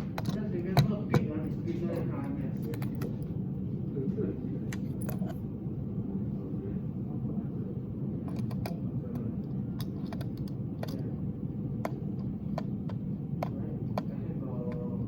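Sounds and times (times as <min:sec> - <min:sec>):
low background hum: 0:00.0 - 0:15.0
sharp clicks and taps: 0:11.8 - 0:14.1.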